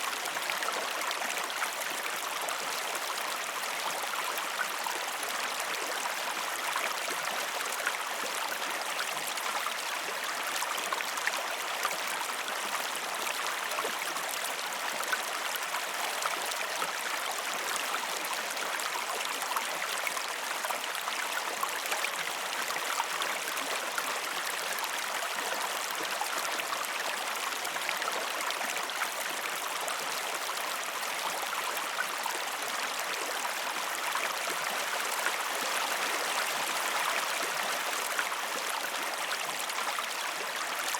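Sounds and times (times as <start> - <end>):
river water babbling: 0.0 - 40.9.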